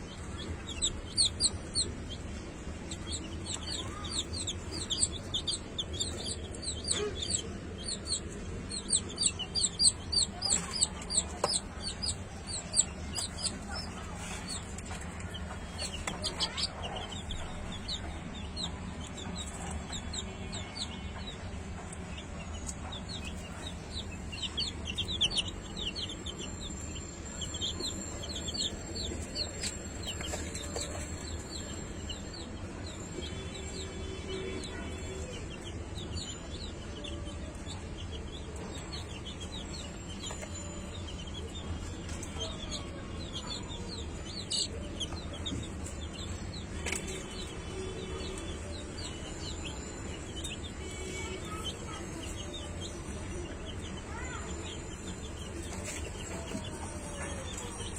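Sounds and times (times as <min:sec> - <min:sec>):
chickens clucking: 0:00.0 - 0:33.3.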